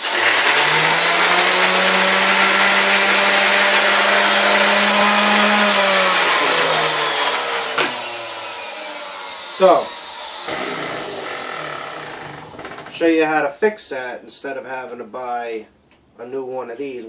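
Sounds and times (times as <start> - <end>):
orbital sander running: 0.0 - 13.0.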